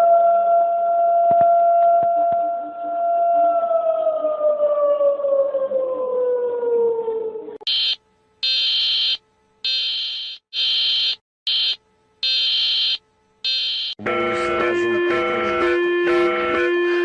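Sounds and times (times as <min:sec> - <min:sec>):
warning siren sliding down: 0:03.2 - 0:17.0
shrill electronic alarm beeps: 0:07.7 - 0:17.0.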